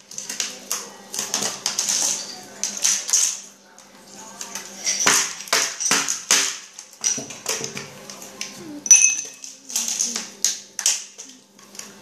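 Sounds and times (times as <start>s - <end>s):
kitchenware clicks and knocks: 0.0s - 3.6s, 4.4s - 12.0s
ringing clink of glass: 8.8s - 9.4s.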